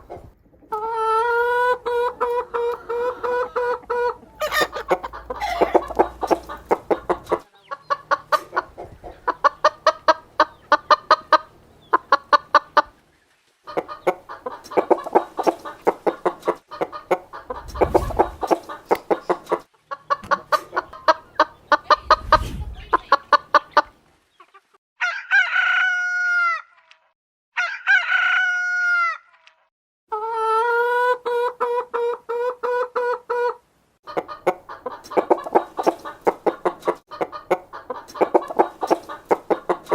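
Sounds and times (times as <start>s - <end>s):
hens clucking and cackling: 0.0s - 26.5s, 30.1s - 39.9s
rooster crowing: 2.6s - 6.7s, 25.0s - 26.6s, 27.6s - 29.2s.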